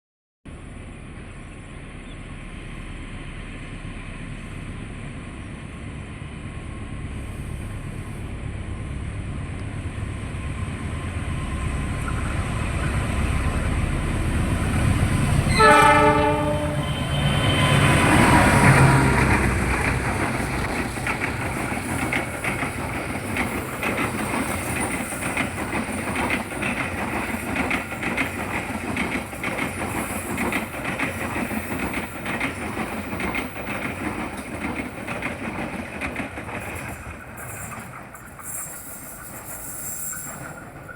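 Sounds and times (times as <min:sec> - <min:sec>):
train rumble: 0:00.5 - 0:40.9
train wheels clicking: 0:12.0 - 0:40.9
train horn blast: 0:15.4 - 0:19.2.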